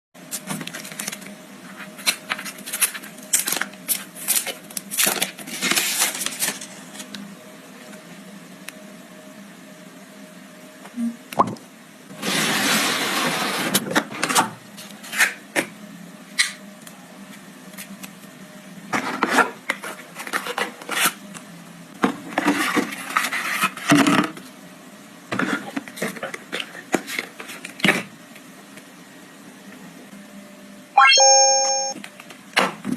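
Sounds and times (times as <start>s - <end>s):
cardboard and plastic rustling: 0.3s - 7.2s
short electronic tone: 31.0s - 32.0s.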